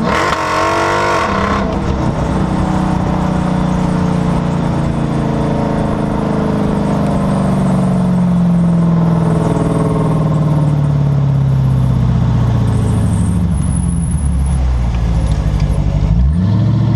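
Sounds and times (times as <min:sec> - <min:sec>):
road rumble: 0:00.0 - 0:16.9
car rear end squeal and whine: 0:11.4 - 0:16.5.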